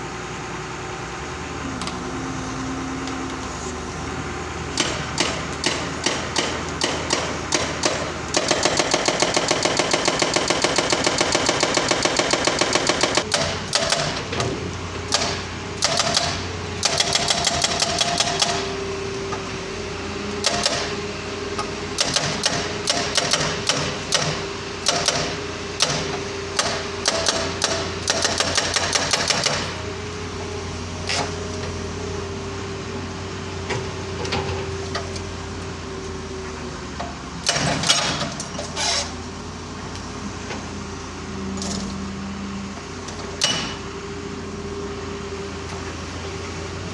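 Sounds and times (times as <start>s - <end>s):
machine engine humming: 0.0s - 46.9s
hydraulic breaker hammering: 4.7s - 18.8s, 20.4s - 21.0s, 21.6s - 31.4s, 37.1s - 39.0s, 43.3s - 43.8s.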